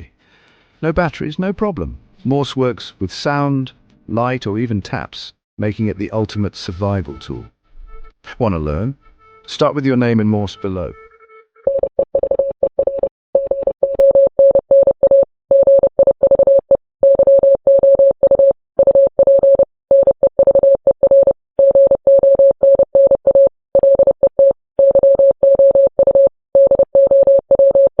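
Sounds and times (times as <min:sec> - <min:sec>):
morse code beeps: 0:11.7 - 0:28.0.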